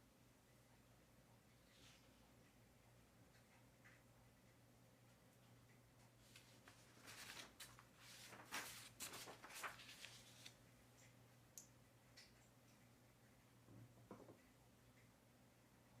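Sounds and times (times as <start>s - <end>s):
paper rustling and scratching: 6.2s - 10.6s.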